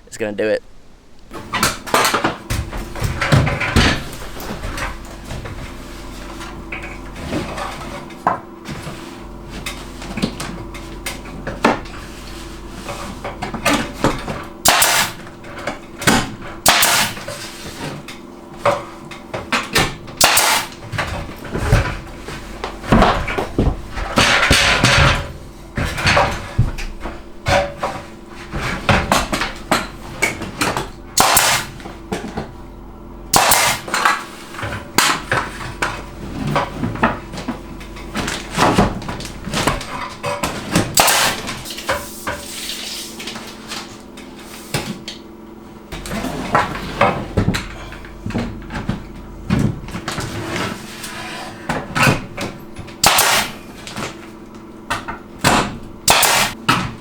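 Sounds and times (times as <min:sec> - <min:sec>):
hammer blows: 0:01.3 - 0:17.9, 0:19.6 - 0:43.9, 0:53.0 - 0:54.2, 0:55.5 - 0:56.6
hard materials clattering: 0:01.3 - 0:57.0.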